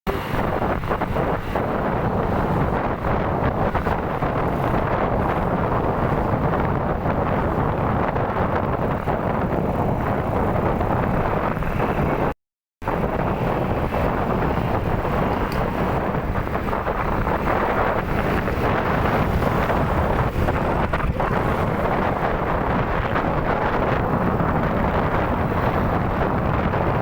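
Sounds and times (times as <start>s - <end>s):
wind buffeting microphone: 0.1s - 27.0s.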